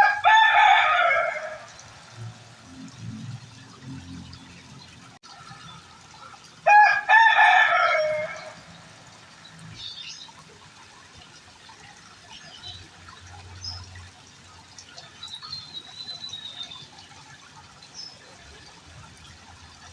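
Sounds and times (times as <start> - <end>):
faint trickling water: 0.0 - 19.9.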